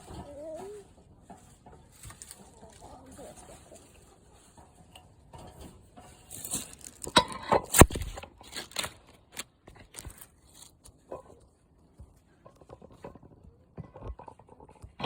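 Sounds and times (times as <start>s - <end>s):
objects clicking and knocking: 4.5s - 11.4s.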